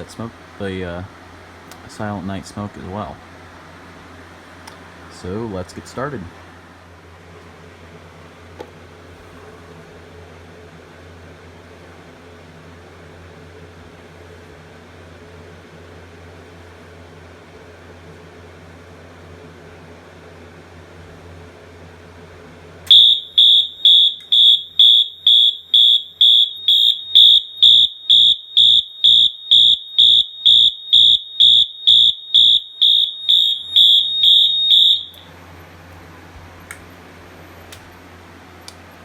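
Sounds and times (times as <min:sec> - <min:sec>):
fire alarm horn pulsing: 0:22.9 - 0:35.4.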